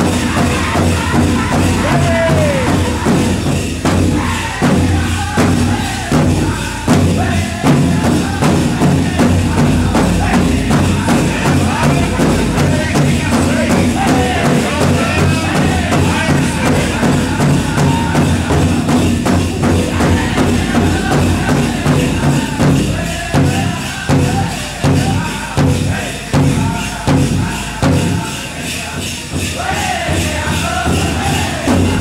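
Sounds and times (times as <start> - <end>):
drum group singing: 0.0 - 32.0
large drum beats: 0.0 - 32.0.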